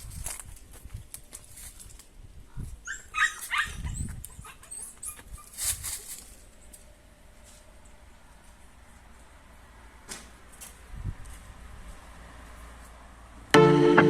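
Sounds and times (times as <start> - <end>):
scuffling and rustling: 0.0 - 2.7, 5.2 - 9.3
puppies yelping: 2.9 - 5.6.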